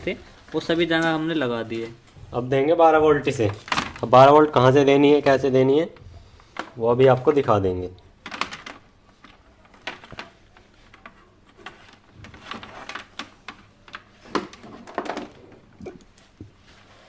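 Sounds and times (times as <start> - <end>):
hands handling tools and wires: 3.0 - 4.3, 8.1 - 16.9.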